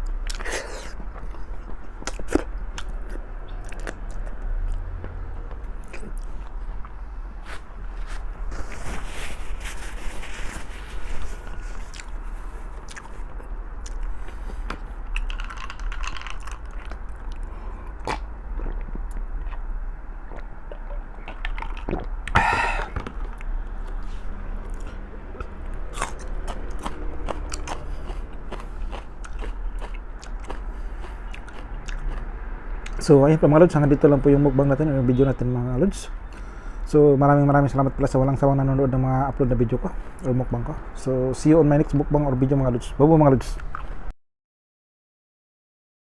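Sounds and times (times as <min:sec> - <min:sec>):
person chewing wetly: 0:00.0 - 0:08.9, 0:10.8 - 0:33.0.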